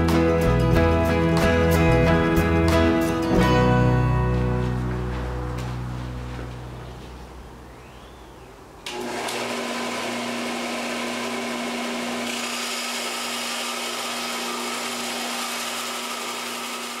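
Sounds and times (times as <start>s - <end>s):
belt sander running: 8.8s - 17.0s.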